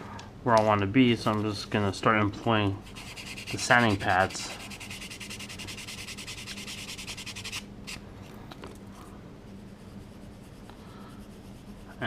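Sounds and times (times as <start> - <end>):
sanding pad rubbing: 2.8 - 7.6.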